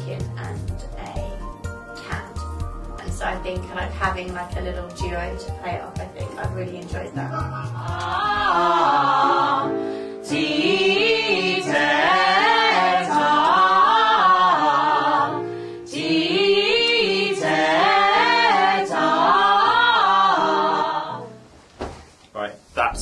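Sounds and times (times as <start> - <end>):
group singing in harmony: 7.6 - 21.4.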